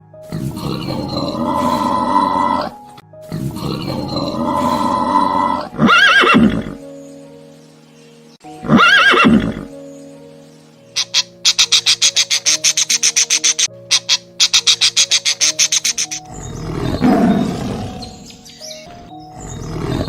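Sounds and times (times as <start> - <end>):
background music: 0.0 - 20.0
rough animal calls: 0.3 - 6.8, 8.6 - 9.7, 11.0 - 20.0
horse whinnying: 3.6 - 6.8, 8.6 - 9.7.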